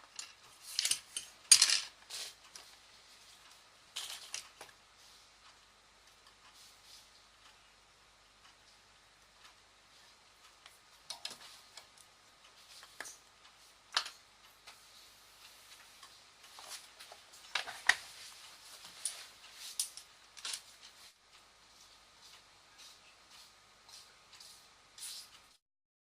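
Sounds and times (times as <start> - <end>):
small clicks and taps: 10.4 - 14.9.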